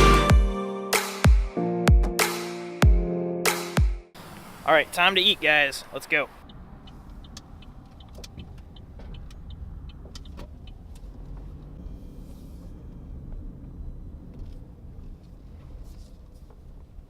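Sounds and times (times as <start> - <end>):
car engine and road rumble: 4.2 - 17.0.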